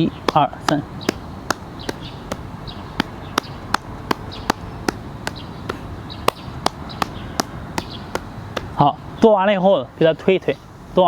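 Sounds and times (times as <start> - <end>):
fist slapping leg: 0.3 - 8.8.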